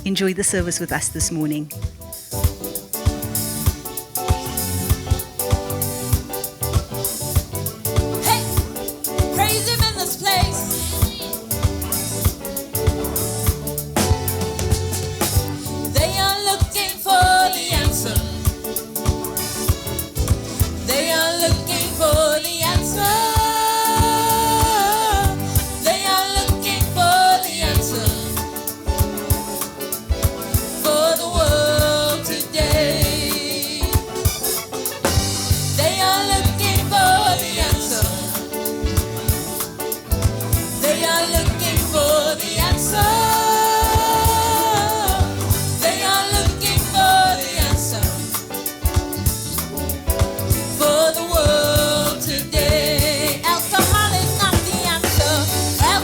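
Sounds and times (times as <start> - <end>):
gospel worship song: 0.0 - 56.0
steady drum beat: 0.0 - 56.0
person singing: 16.0 - 19.1, 20.9 - 28.9, 30.6 - 34.9, 35.6 - 38.9, 40.8 - 48.7, 50.8 - 56.0.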